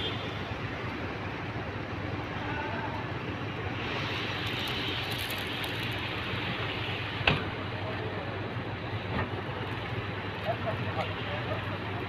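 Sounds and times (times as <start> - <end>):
low outdoor rumble: 0.0 - 12.0
hiss: 3.8 - 7.4.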